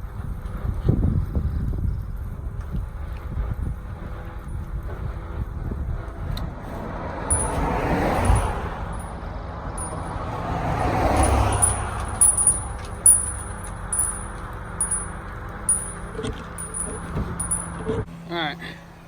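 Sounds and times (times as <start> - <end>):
truck winch and engine running: 1.8 - 19.0
light metallic ticks: 11.2 - 17.7.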